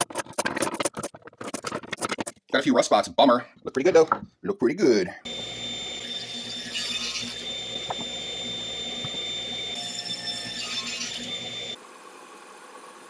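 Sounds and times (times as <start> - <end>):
power tool motor whining: 5.3 - 11.8.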